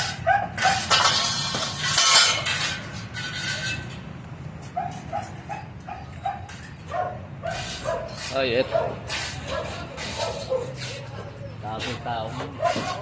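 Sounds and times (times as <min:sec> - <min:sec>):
harsh scraping noise: 0:00.0 - 0:13.0
dog barking: 0:00.2 - 0:00.9, 0:04.8 - 0:11.4, 0:12.5 - 0:13.0.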